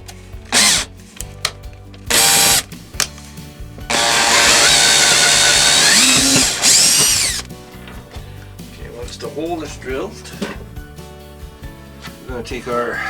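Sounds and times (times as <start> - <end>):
power drill whining: 0.5 - 0.9, 2.1 - 2.7, 3.9 - 7.5.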